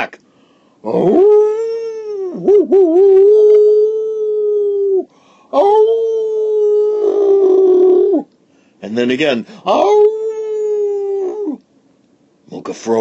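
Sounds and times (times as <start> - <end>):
wolf-like howls: 0.8 - 8.2, 9.8 - 11.6.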